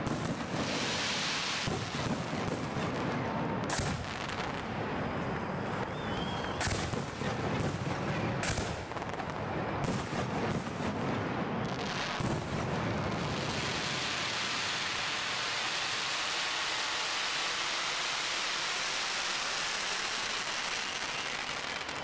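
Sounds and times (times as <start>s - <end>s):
firework booms: 0.0s - 15.3s
fireworks crackling: 0.0s - 22.0s.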